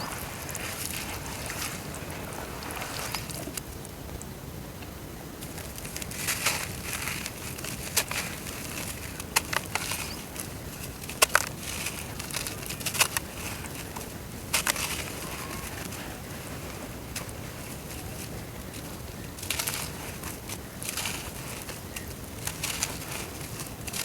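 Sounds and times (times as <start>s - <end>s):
dirt crumbling in water: 0.0s - 3.8s, 16.6s - 24.0s.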